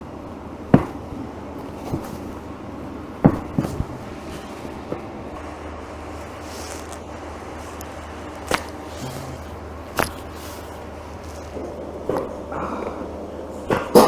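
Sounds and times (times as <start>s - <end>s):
steady low hum: 0.0s - 14.0s
spine popping: 7.6s - 13.0s.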